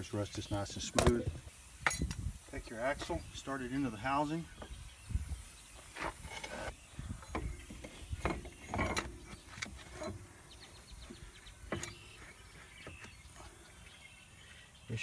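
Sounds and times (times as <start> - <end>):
metal knocking and scraping: 6.0 - 10.4, 11.0 - 13.2.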